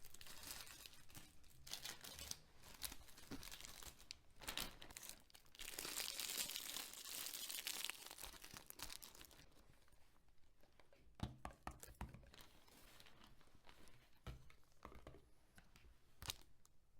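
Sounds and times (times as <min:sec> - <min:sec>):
packaging crinkling and tearing: 0:00.0 - 0:09.5.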